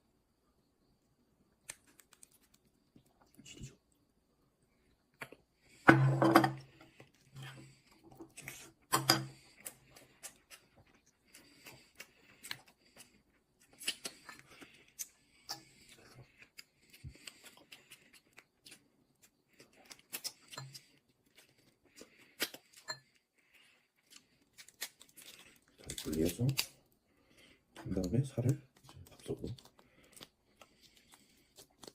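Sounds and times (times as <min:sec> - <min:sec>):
crab shell cracking and tearing: 0:01.6 - 0:03.3, 0:16.4 - 0:22.9, 0:24.0 - 0:27.0, 0:28.4 - 0:31.9.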